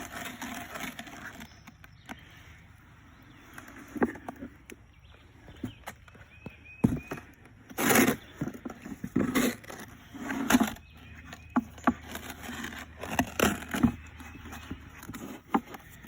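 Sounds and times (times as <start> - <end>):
hand tool scraping wet concrete: 6.9 - 16.0.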